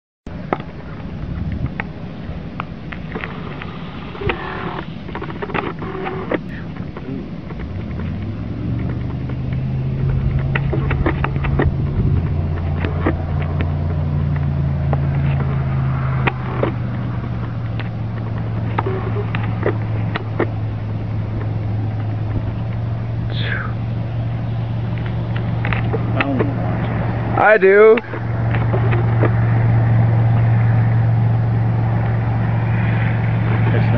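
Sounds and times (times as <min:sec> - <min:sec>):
motor humming: 0:00.5 - 0:33.9
light clicks and rustles: 0:05.0 - 0:23.2.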